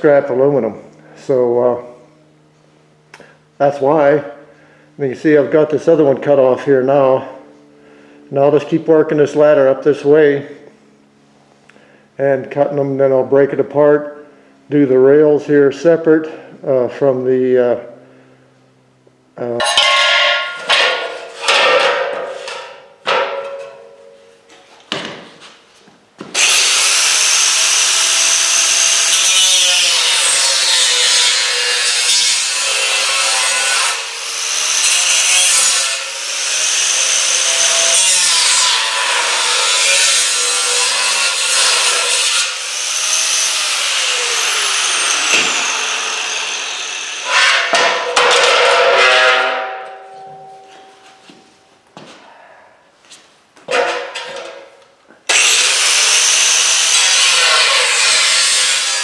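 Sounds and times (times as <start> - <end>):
metal clattering: 19.6 - 24.2
metallic knocks: 19.6 - 24.2
power tool cutting metal: 26.3 - 48.6, 55.3 - 59.0.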